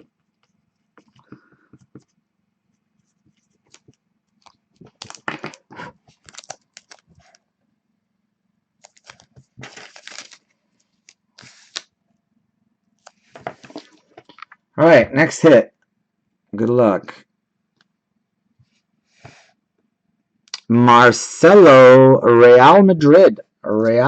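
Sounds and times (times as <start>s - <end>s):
plastic packaging crinkling and tearing: 4.4s - 7.4s, 8.8s - 11.9s.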